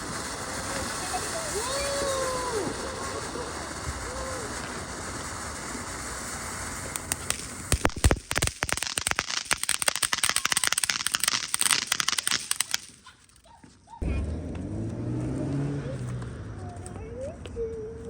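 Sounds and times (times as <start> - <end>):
fireworks bangs: 0.0 - 13.4
fireworks hissing: 0.0 - 13.4
firecrackers crackling: 0.0 - 13.6.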